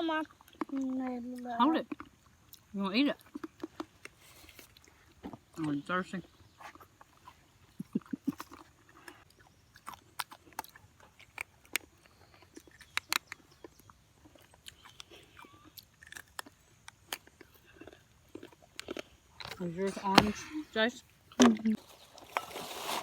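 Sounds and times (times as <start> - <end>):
person chewing crunchy food: 0.2 - 5.6, 6.3 - 20.7.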